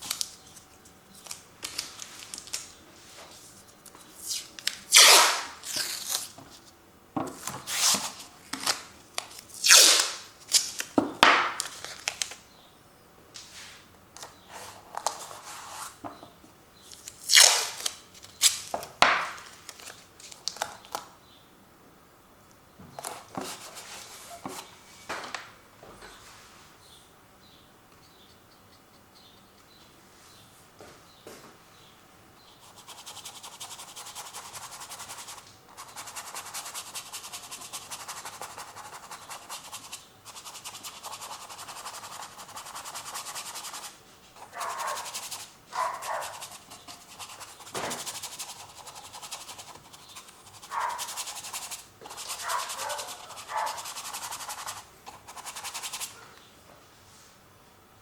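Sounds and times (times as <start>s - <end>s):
scratchy paint strokes on canvas: 32.6s - 56.2s.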